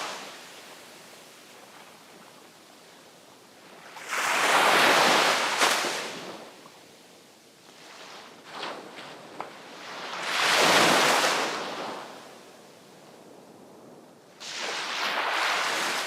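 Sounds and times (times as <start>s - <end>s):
faint surf hiss: 0.0s - 16.0s
wave crashing on shore: 10.0s - 12.2s, 14.4s - 16.0s.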